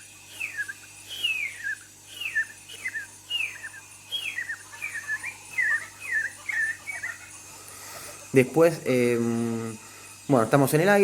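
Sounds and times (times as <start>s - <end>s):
man whistling bird calls: 0.0s - 7.2s.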